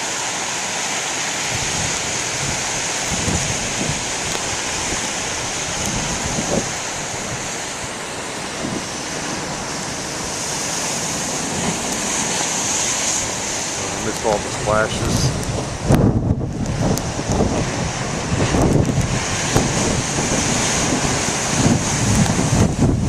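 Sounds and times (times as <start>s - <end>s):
surf breaking on shore: 0.0s - 23.0s
wind on microphone: 1.4s - 23.0s.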